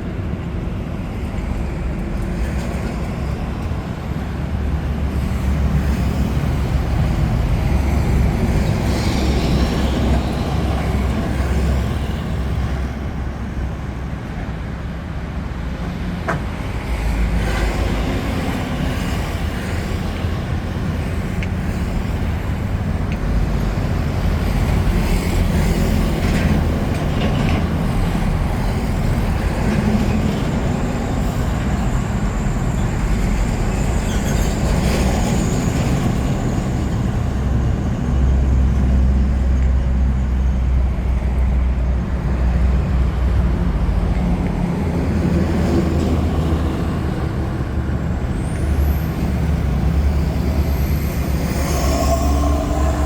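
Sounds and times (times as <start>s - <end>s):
heavy engine drone: 47.2s - 53.0s.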